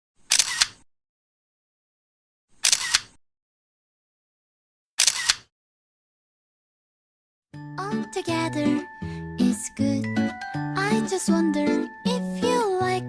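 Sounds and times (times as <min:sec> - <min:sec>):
camera shutter double click: 0:00.3 - 0:00.8, 0:02.6 - 0:03.2, 0:05.0 - 0:05.5.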